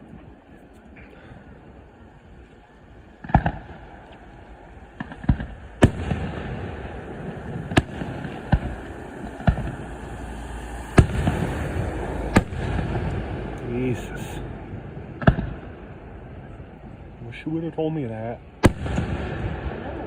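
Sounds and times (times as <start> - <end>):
steady background rush: 0.9 - 20.0
firework shells bursting: 3.2 - 16.6.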